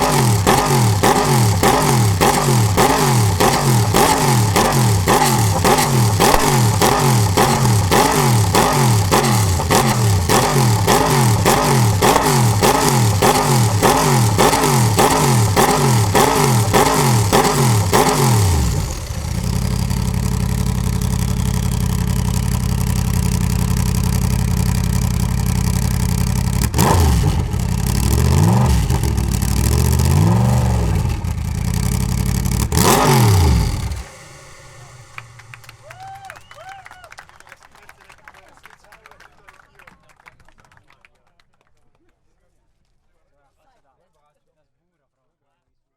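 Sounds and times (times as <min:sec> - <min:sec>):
racing car engine revving: 0:00.0 - 0:35.9.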